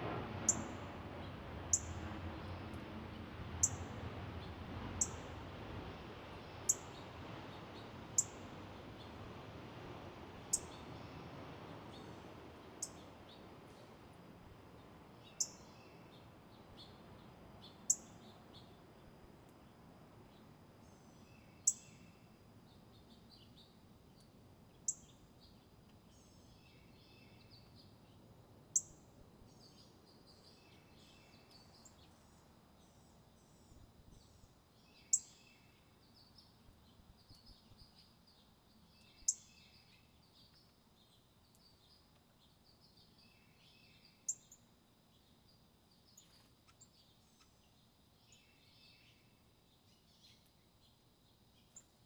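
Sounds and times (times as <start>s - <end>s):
birds chirping and twittering: 4.4s - 5.3s, 6.5s - 9.2s, 10.5s - 13.9s, 14.8s - 18.8s, 29.5s - 52.0s.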